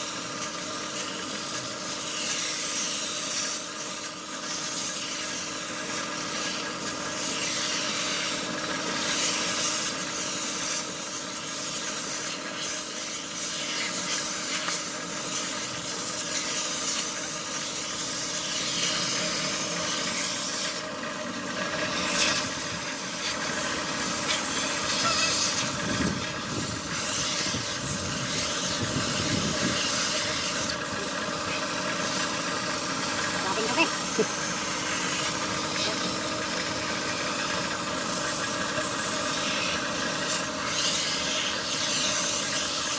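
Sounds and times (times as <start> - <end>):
compressed air hissing: 0.0 - 42.9.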